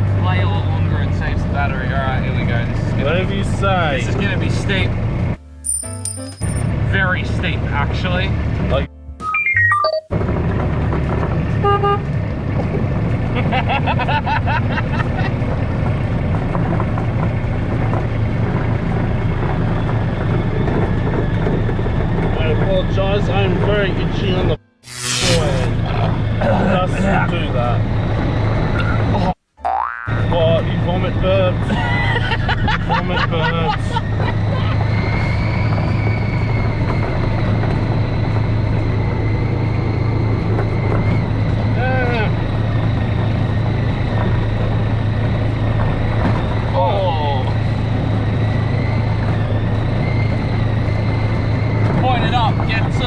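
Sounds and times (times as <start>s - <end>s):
farm vehicle engine droning: 0.0s - 53.0s
high-pitched whine: 24.8s - 26.1s.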